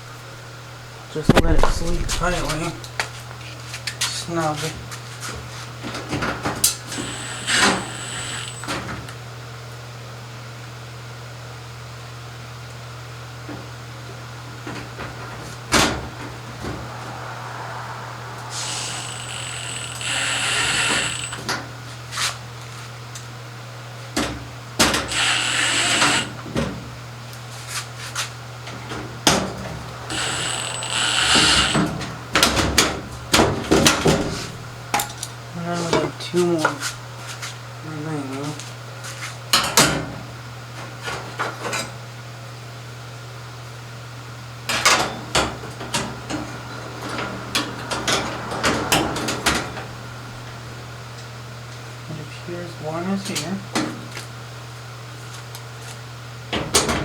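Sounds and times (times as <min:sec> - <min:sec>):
steady low hum: 0:00.8 - 0:03.3, 0:14.6 - 0:21.8.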